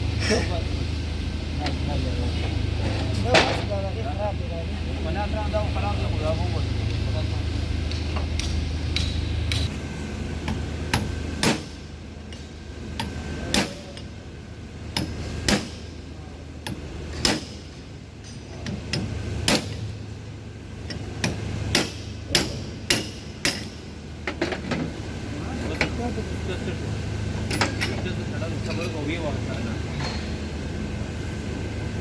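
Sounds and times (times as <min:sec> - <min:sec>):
hammer striking metal: 0:07.9 - 0:09.7, 0:10.5 - 0:14.1, 0:14.9 - 0:16.0, 0:16.6 - 0:19.9, 0:20.9 - 0:24.6.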